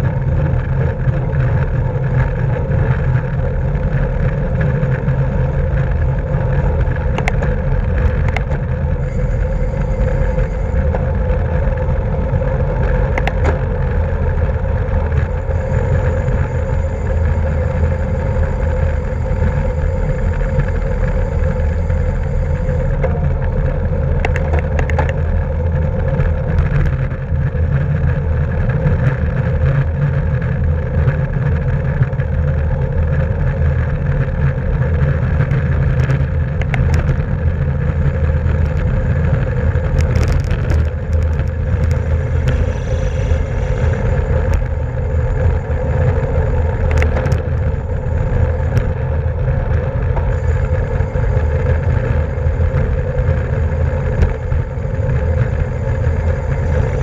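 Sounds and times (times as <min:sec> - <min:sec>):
bicycle road noise: 0:00.0 - 0:57.0
wind rush: 0:32.2 - 0:57.0.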